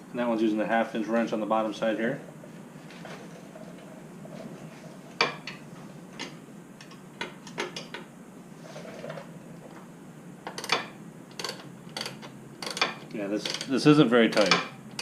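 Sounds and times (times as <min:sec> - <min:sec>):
wrench clicking on bolt: 0:10.5 - 0:13.7.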